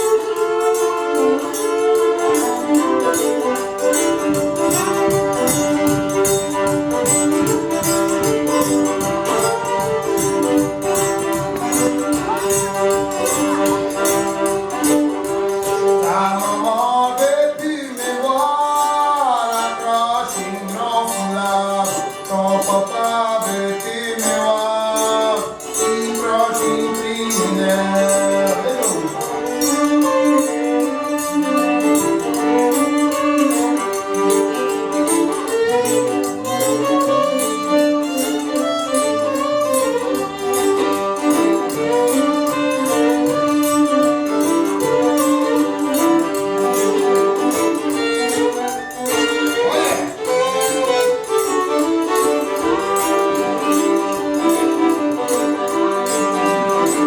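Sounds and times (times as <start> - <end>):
string band music with fiddle: 0.0 - 57.0.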